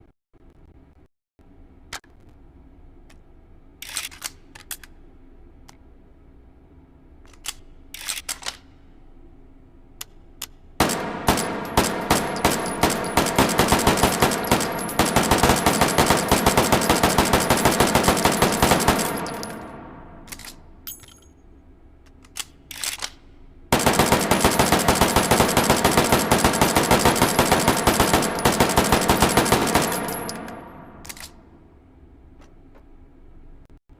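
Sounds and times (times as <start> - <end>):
sharp metallic clicks: 10.0 - 21.0, 23.8 - 31.4
rapid rifle shots echoing: 10.8 - 20.6, 23.7 - 31.4.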